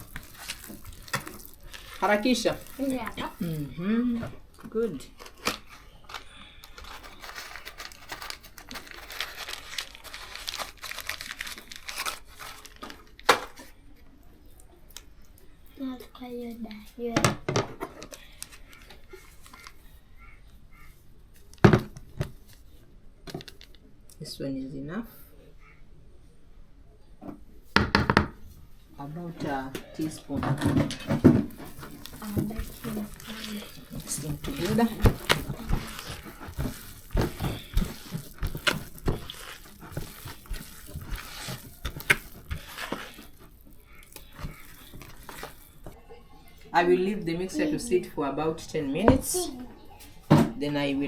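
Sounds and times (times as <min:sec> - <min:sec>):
batter mixed by hand squelching: 0:00.0 - 0:13.3, 0:29.0 - 0:49.5.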